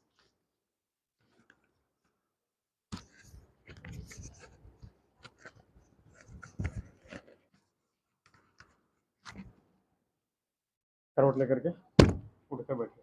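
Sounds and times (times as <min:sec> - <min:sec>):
soft body thump: 0:12.0 - 0:12.3.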